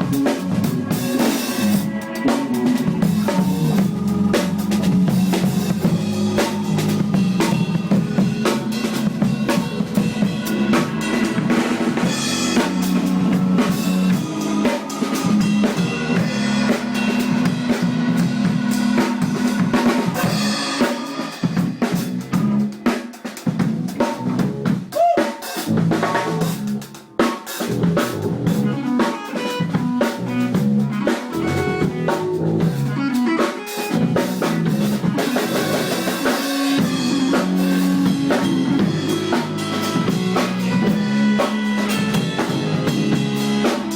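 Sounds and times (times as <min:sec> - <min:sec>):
band music: 0:00.0 - 0:43.9
drum kit snare and bass drum: 0:00.0 - 0:43.9.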